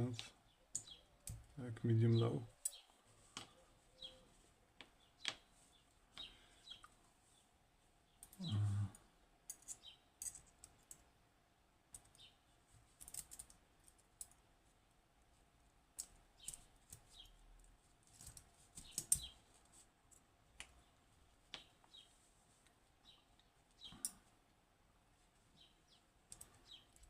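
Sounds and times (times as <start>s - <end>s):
small metal lock parts clicking: 9.5s - 11.0s, 13.0s - 14.4s.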